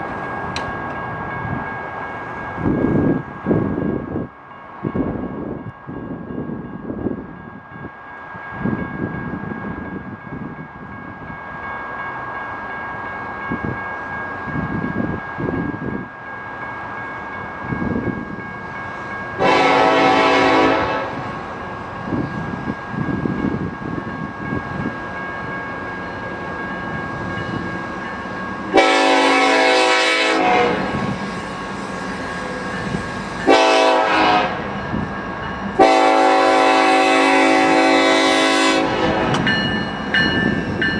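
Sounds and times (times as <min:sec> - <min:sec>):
train rumbling and clattering on rails: 0:00.0 - 0:40.9
locomotive air horn blasts: 0:19.4 - 0:21.3, 0:28.7 - 0:31.0, 0:33.4 - 0:34.6, 0:35.8 - 0:39.4.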